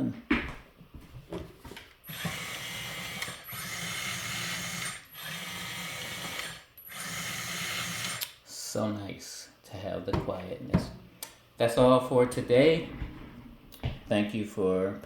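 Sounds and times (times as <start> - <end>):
toy motor and gears running: 2.0 - 8.3.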